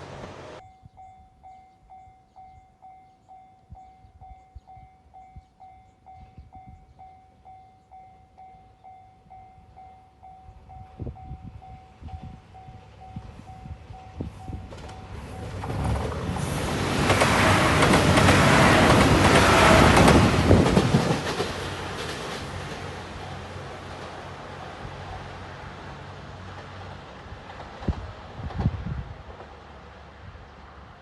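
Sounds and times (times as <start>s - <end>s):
level-crossing warning bell: 0.6s - 15.7s.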